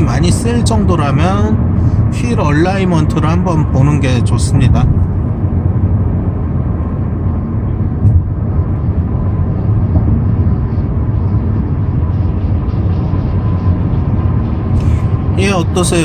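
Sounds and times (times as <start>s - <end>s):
car cabin road rumble: 0.0s - 16.0s
faint thin whine: 6.8s - 16.0s.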